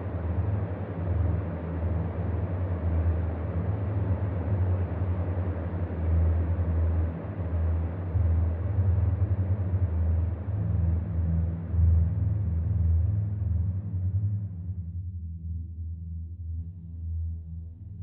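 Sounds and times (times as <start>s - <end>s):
low wavering hum: 0.0s - 18.0s.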